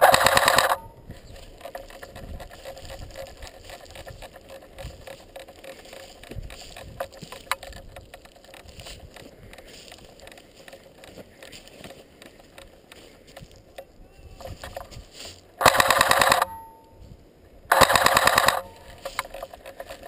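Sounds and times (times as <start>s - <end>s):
rattling handling noise: 0.0s - 13.6s, 17.7s - 20.0s.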